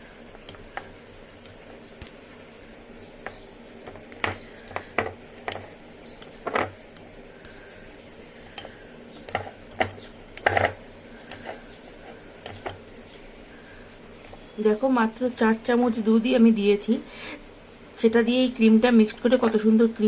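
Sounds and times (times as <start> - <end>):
spoon stirring cream in bowl: 0.2 - 13.1.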